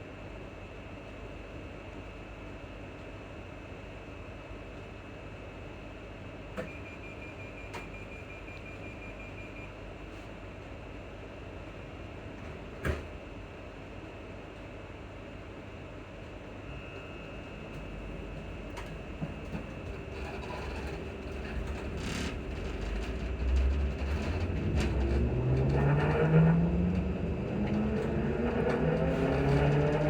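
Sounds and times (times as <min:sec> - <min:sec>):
train rumble: 0:10.4 - 0:30.0.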